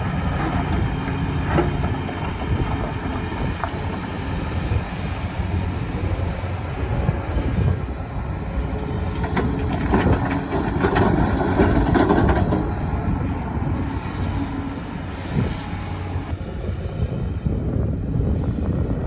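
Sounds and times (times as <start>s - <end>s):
diesel engine under load: 0.0s - 19.0s
bucket scraping and grinding rock: 8.6s - 16.2s.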